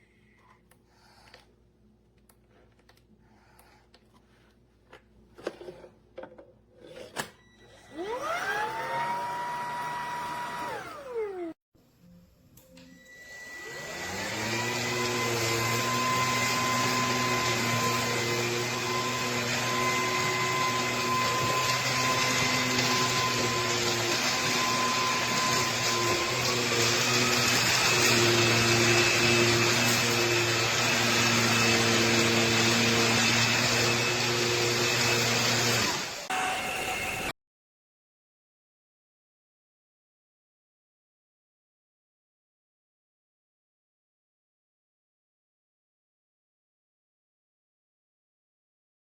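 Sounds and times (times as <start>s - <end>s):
vacuum motor whining: 7.6s - 11.6s, 12.8s - 37.3s.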